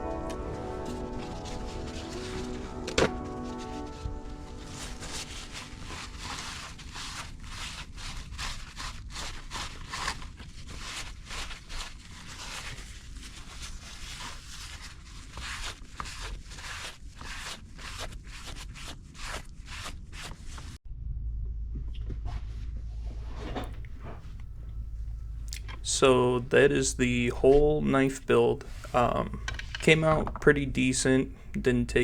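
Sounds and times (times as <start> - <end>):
hand scraping strokes: 0.0 - 20.6, 23.4 - 32.0
low steady hum: 20.9 - 32.0.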